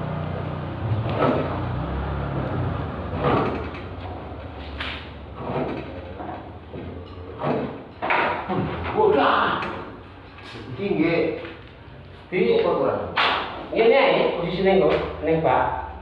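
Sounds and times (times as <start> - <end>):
vehicle engine running: 0.0 - 7.4
heavy metal clunks and scrapes: 3.1 - 9.0.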